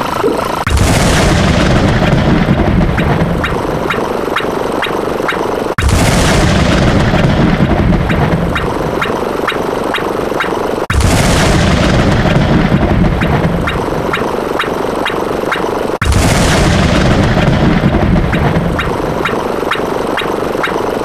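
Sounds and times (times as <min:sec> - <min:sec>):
explosion boom: 0:00.7 - 0:04.1, 0:05.8 - 0:09.2, 0:10.9 - 0:14.4, 0:16.0 - 0:19.7
steady clicking: 0:01.4 - 0:05.8, 0:06.4 - 0:10.7, 0:11.6 - 0:15.9, 0:16.5 - 0:21.0.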